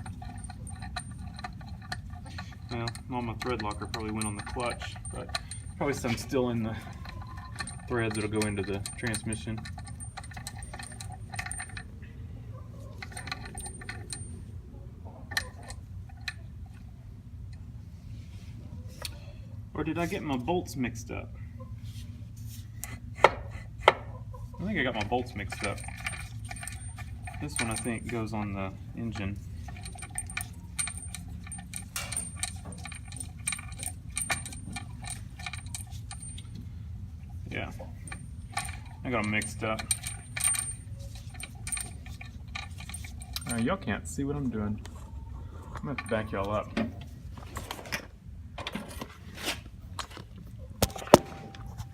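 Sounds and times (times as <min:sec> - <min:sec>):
metal bolts and tools clinking: 0:00.0 - 0:12.0, 0:12.8 - 0:14.5, 0:15.2 - 0:16.9, 0:24.7 - 0:36.6, 0:37.3 - 0:43.9, 0:45.8 - 0:51.9
steady low hum: 0:00.0 - 0:51.9.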